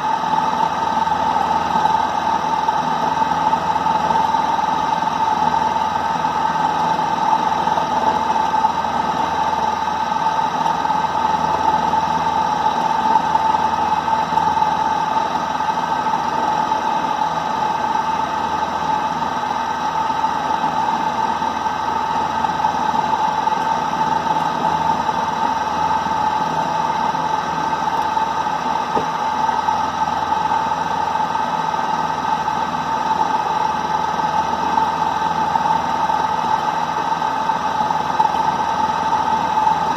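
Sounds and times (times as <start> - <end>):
milling machine motor whine: 0.0 - 39.9.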